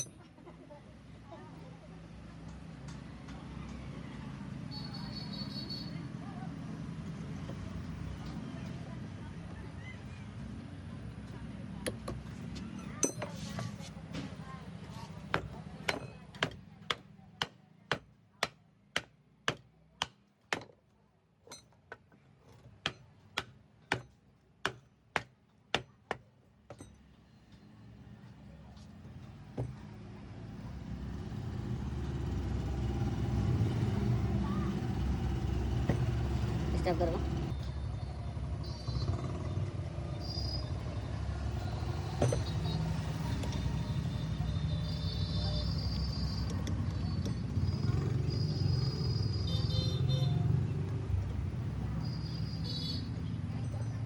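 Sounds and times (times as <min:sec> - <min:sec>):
hammer striking metal: 0:00.0 - 0:00.2, 0:13.0 - 0:13.5, 0:15.3 - 0:20.8, 0:21.5 - 0:21.8, 0:22.8 - 0:27.0.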